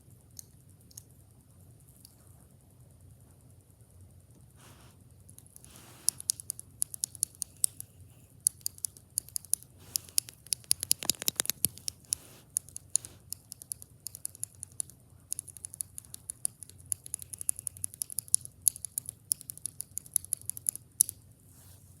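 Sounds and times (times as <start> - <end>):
mechanical keyboard keystroke clacks: 6.1 - 7.8, 8.4 - 21.2.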